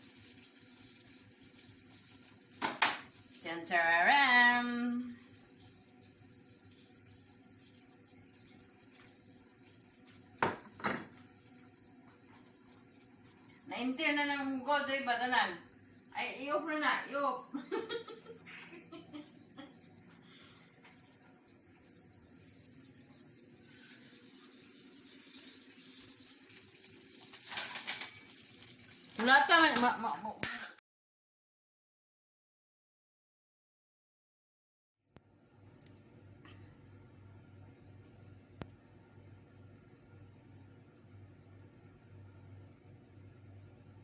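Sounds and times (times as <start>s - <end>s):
water running: 0.0s - 30.8s.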